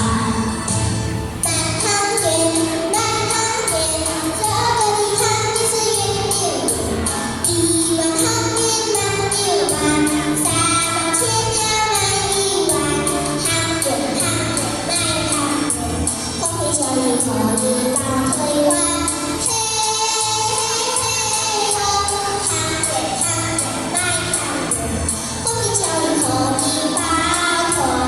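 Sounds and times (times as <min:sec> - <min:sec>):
backing track with steady beat: 0:00.0 - 0:28.0
woman singing: 0:07.4 - 0:24.8, 0:25.4 - 0:28.0.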